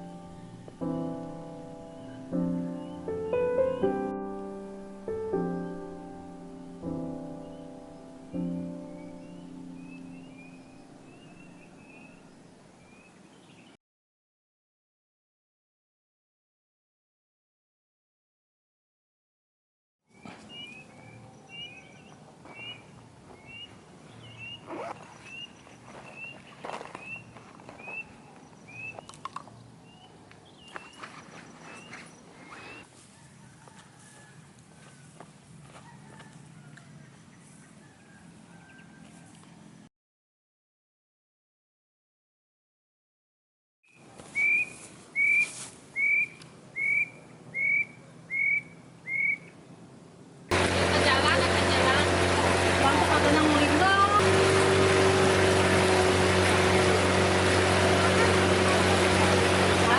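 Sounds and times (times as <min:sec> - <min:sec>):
bird chirping: 0:00.0 - 0:04.0, 0:06.6 - 0:13.8, 0:20.1 - 0:32.9, 0:44.0 - 0:49.7
bird whistled call: 0:31.6 - 0:32.8, 0:44.3 - 0:49.6
soft scuffs: 0:44.1 - 0:45.8.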